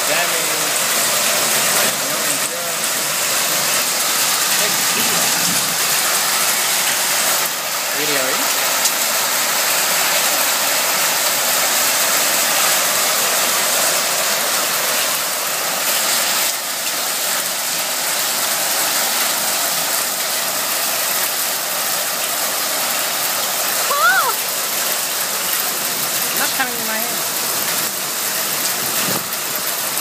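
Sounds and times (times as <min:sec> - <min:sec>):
heavy hail falling: 0:00.0 - 0:30.0.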